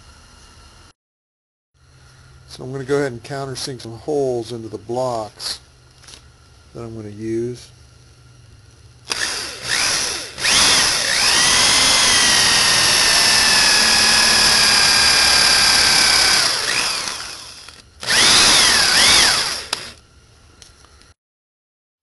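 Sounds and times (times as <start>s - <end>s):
electric drill cutting wood: 9.1s - 20.0s.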